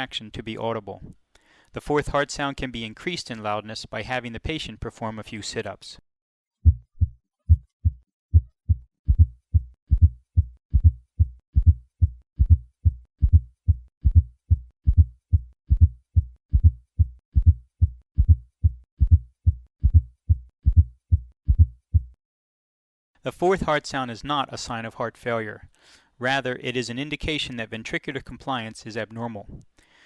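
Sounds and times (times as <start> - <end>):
atrial gallop heart sound: 6.6 - 22.2
heartbeat through stethoscope: 6.6 - 22.2.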